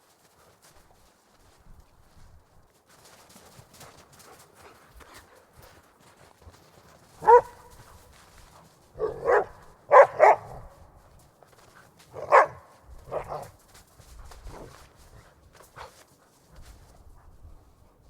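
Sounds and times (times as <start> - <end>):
dog barking: 7.2 - 7.9, 9.0 - 10.8, 12.1 - 13.5.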